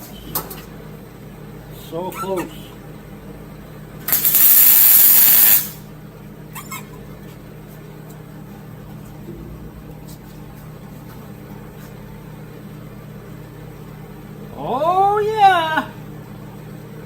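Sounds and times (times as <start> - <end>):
air hissing burst: 4.1 - 5.8.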